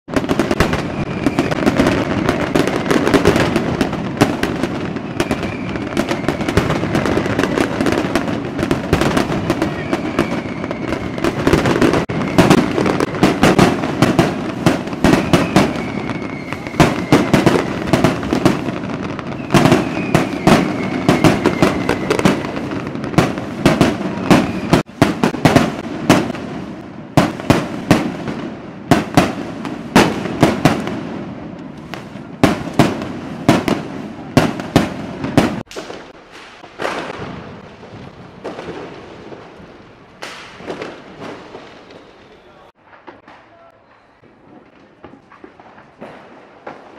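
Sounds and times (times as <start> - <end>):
firework whistles: 0.1 - 26.3, 40.2 - 45.0
fireworks bangs and crackling: 0.1 - 46.9.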